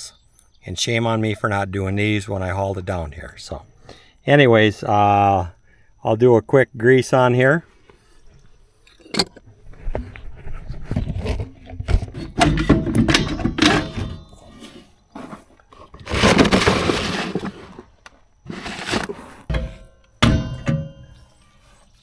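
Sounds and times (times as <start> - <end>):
metal parts clanking: 8.9 - 9.4, 12.0 - 21.0
metal scraping: 10.9 - 19.9.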